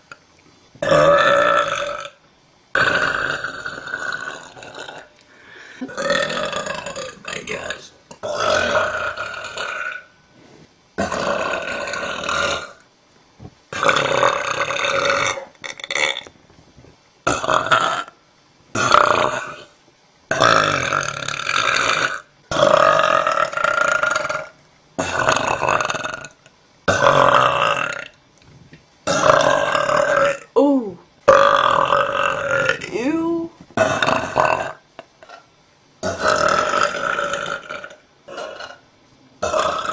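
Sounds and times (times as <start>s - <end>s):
woman belching: 0.8s - 2.2s, 5.8s - 7.4s, 29.1s - 35.4s, 36.0s - 38.8s, 39.4s - 39.9s.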